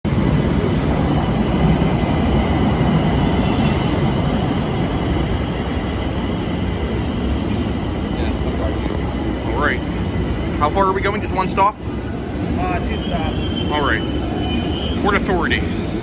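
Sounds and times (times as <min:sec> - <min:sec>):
train rumbling on rails: 0:00.0 - 0:16.0
train wheels squealing: 0:12.2 - 0:16.0.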